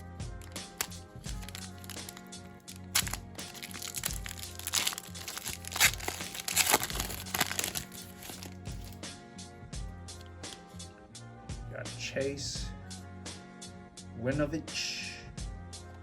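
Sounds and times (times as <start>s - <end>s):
background music with beat: 0.0s - 16.0s
card pack wrapper crinkling: 0.4s - 9.0s.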